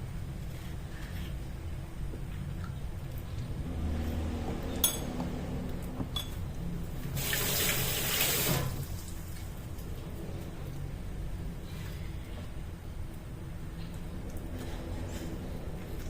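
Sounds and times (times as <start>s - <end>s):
kitchen tap running: 7.1s - 9.6s.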